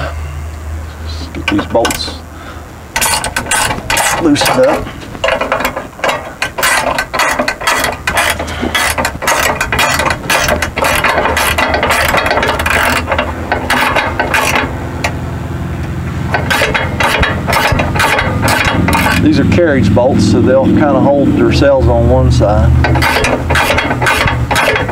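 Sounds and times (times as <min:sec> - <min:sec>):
ratchet wrench clicking: 0:03.0 - 0:14.7, 0:16.4 - 0:19.3.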